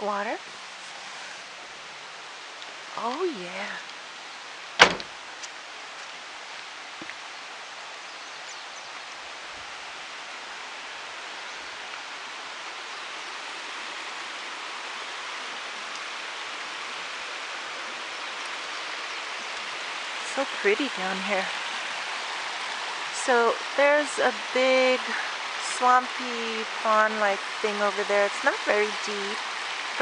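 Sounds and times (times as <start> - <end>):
runoff water rushing: 0.0 - 30.0.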